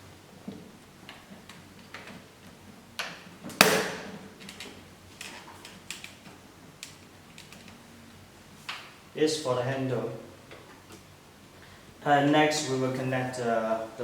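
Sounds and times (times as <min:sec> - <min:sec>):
connectors clicking and knocking: 0:01.0 - 0:07.8.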